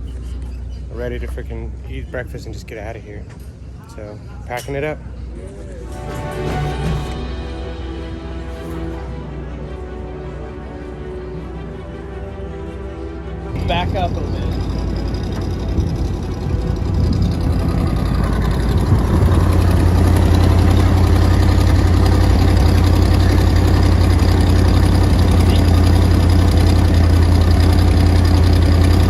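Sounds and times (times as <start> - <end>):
vehicle engine running at low revs: 13.6 - 29.0.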